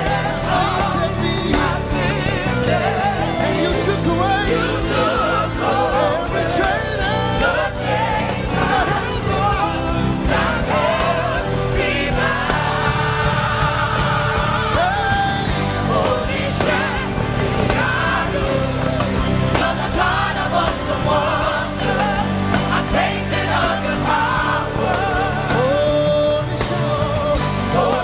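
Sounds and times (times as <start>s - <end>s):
bass line: 0.0s - 28.0s
choir singing with vibrato: 0.0s - 28.0s.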